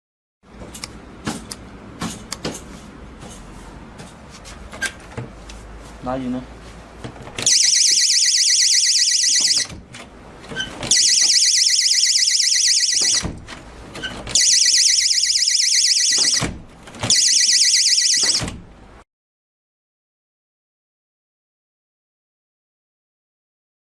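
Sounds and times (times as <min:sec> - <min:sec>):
warbling alarm siren: 0:07.4 - 0:09.7, 0:10.9 - 0:13.3, 0:14.3 - 0:16.5, 0:17.1 - 0:18.5.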